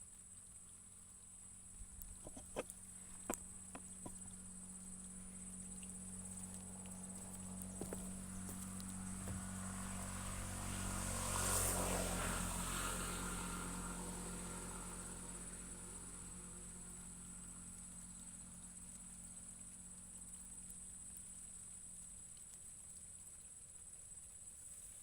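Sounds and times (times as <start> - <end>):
passing engine: 6.8 - 16.6.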